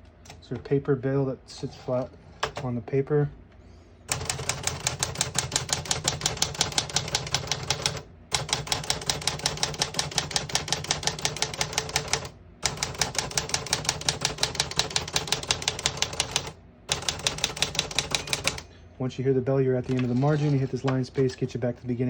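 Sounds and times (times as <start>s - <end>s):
typewriter typing: 4.1s - 18.6s, 19.8s - 21.0s.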